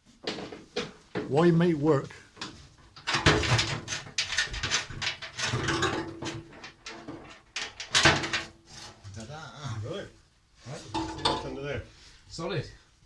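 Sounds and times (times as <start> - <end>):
hand tools knocking and scraping: 2.4 - 9.2, 10.8 - 11.7.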